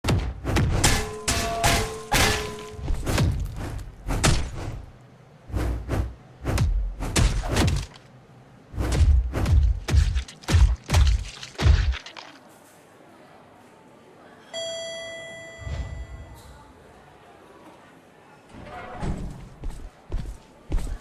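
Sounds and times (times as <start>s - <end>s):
heavy thuds and thumps: 1.8s - 4.9s, 5.5s - 8.0s, 8.8s - 12.0s.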